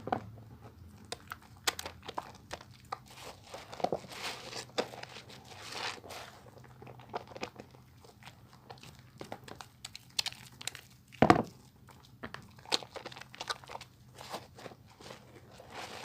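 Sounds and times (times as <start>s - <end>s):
soap lather crackling and squishing: 0.0s - 16.0s.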